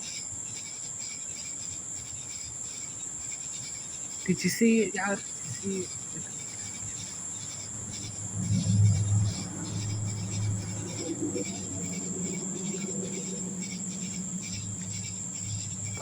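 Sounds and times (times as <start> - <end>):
crickets chirping: 0.0 - 16.0
low rumble: 7.7 - 16.0.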